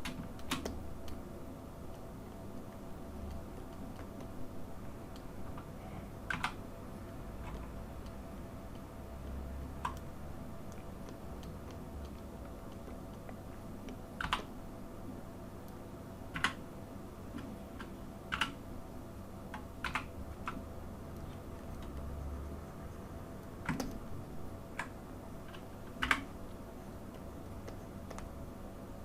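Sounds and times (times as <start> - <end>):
computer keyboard clicks: 0.0 - 1.2, 6.3 - 6.6, 9.8 - 10.1, 10.7 - 14.5, 15.7 - 16.6, 17.4 - 18.6, 19.5 - 20.6, 23.4 - 24.0, 24.8 - 26.4, 27.1 - 28.3
faint low hum: 0.0 - 29.0.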